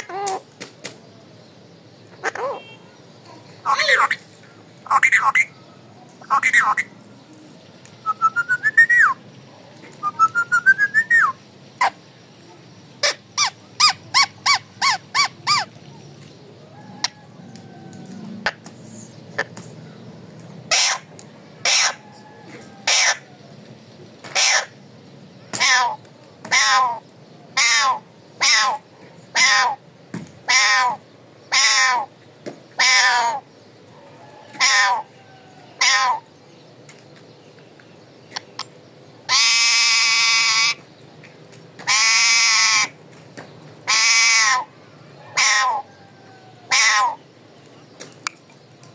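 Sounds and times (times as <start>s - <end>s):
parakeet squawking: 2.2s - 2.7s, 3.6s - 4.2s, 4.9s - 5.5s, 6.2s - 7.0s, 13.0s - 15.7s, 20.7s - 22.0s, 22.8s - 23.3s, 24.3s - 24.8s, 25.6s - 27.0s, 27.6s - 28.8s, 29.4s - 29.8s, 30.5s - 32.1s, 32.8s - 33.4s, 34.6s - 35.1s, 35.8s - 36.2s, 39.3s - 40.8s, 41.9s - 42.9s, 43.9s - 44.7s, 45.4s - 45.9s, 46.7s - 47.2s.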